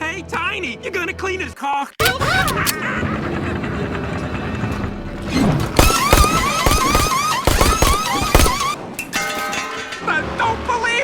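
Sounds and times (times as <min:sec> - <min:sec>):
knocks and clatters of wheels: 0:02.0 - 0:10.9
pneumatic impact wrench whirring: 0:05.8 - 0:08.8.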